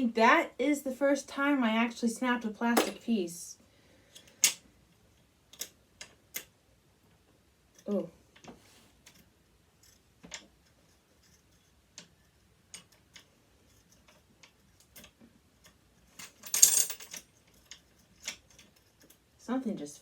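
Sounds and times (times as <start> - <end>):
small metal clicks and taps: 4.2 - 4.6, 5.5 - 6.6, 9.8 - 10.6, 11.2 - 16.3.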